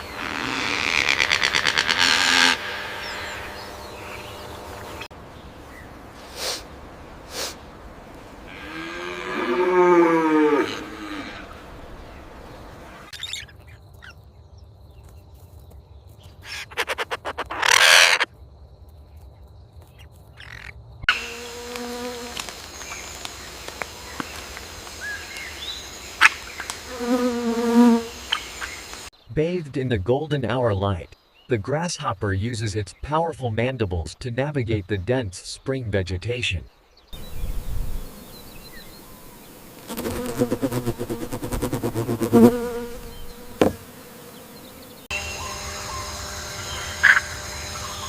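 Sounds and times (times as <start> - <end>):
farm animal calls: 0.0 - 5.1, 16.4 - 18.3, 42.4 - 48.0.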